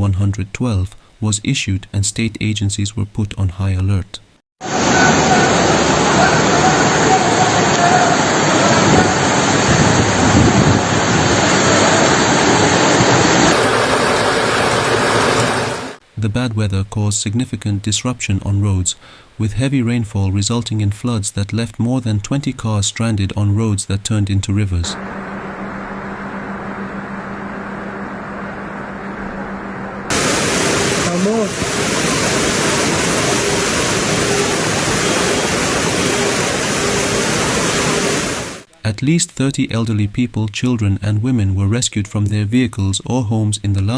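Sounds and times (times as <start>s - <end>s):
floodwater and rain rushing: 4.6s - 16.0s, 30.1s - 38.7s.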